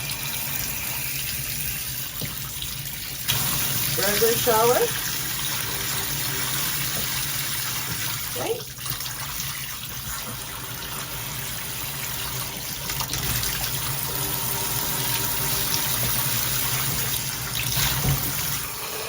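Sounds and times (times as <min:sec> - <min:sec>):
shower head spraying water: 0:03.1 - 0:08.7, 0:10.2 - 0:19.0.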